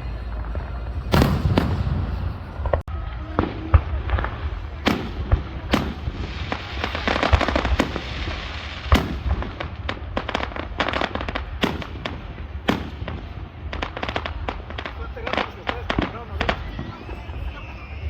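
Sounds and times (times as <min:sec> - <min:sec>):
fireworks booming: 0:00.0 - 0:18.0
fireworks crackling: 0:00.0 - 0:18.0.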